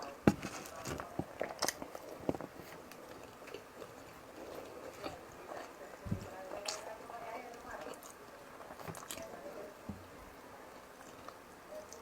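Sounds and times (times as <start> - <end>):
person chewing and lip smacking: 0.5 - 5.8, 7.8 - 9.2.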